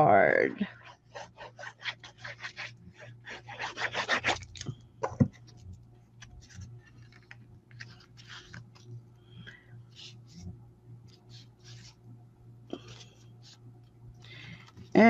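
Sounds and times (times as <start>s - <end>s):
paper being rubbed by hand: 0.8s - 4.5s, 11.1s - 12.0s.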